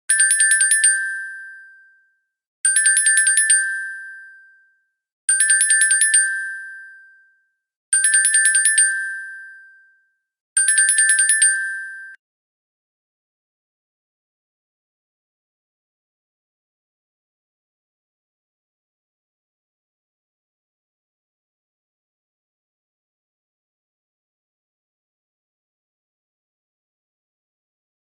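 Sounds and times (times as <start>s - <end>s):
bright bell-like ringing: 0.1s - 2.1s, 2.7s - 7.4s, 8.0s - 12.2s.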